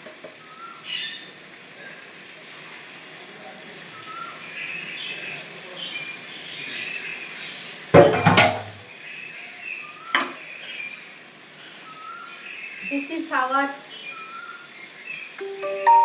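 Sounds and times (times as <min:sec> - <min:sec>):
metal cookware clattering: 0:08.0 - 0:08.8
sharp knock: 0:08.0 - 0:08.8
faint bird chirps: 0:09.0 - 0:16.0.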